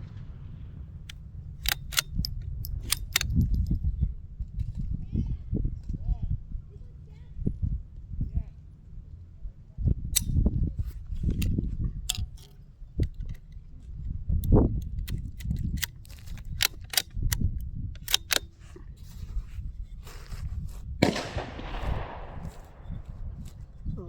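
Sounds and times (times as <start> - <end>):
wind buffeting microphone: 0.0 - 8.6, 9.7 - 24.0
rifle shots cracking: 21.0 - 23.8.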